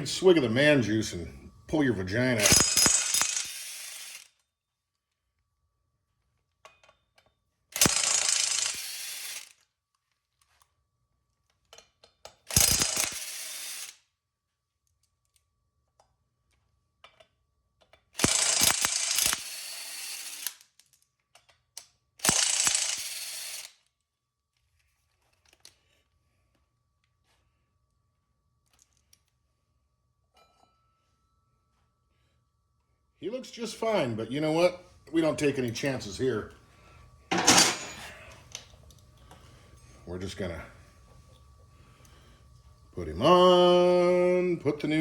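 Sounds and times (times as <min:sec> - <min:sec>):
impact wrench bursts: 0:02.2 - 0:04.3, 0:07.8 - 0:09.5, 0:12.5 - 0:14.0, 0:18.2 - 0:20.6, 0:22.2 - 0:23.8.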